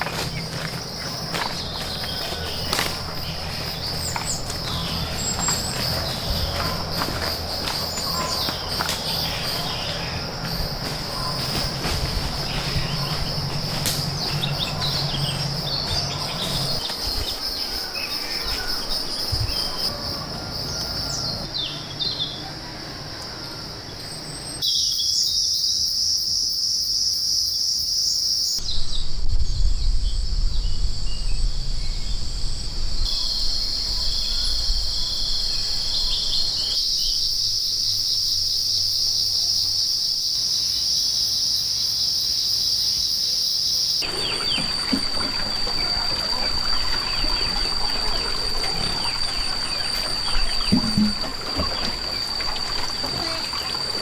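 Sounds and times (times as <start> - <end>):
low rustling and knocks: 0.0 - 19.9, 44.0 - 54.0
insect chorus buzzing: 0.0 - 54.0.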